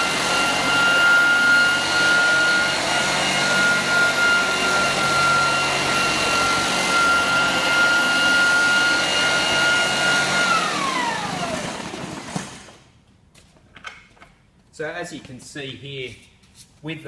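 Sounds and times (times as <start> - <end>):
floor sander motor whine: 0.0 - 12.9.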